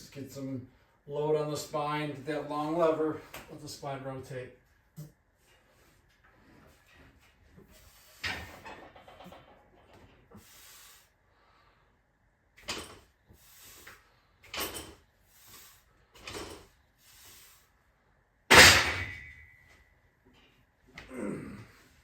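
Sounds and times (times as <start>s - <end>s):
weight bar rustling and rattling: 5.4s - 10.6s, 12.6s - 17.4s, 18.5s - 20.7s
loud metal clank ringing: 18.5s - 19.7s.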